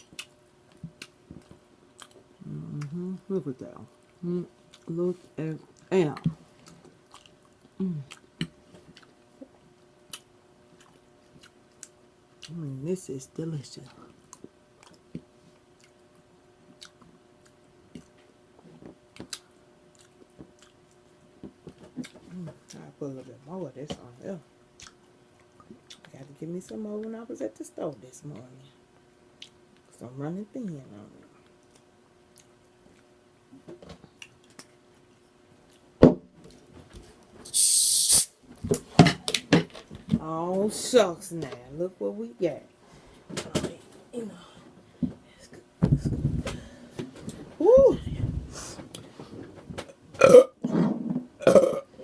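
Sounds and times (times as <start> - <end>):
person chewing food: 0.0 - 3.0, 4.0 - 4.9, 6.5 - 12.6, 14.3 - 22.8, 24.8 - 26.1, 31.4 - 33.1, 34.1 - 35.9
short loud hiss: 37.5 - 38.4.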